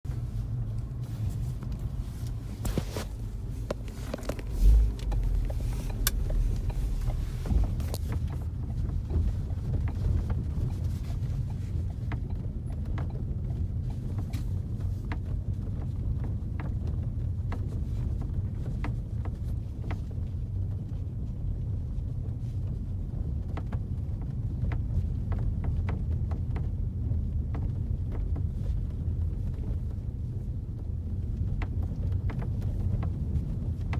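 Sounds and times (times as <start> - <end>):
road and engine rumble: 0.0 - 33.9
heavy low thump: 2.6 - 9.3.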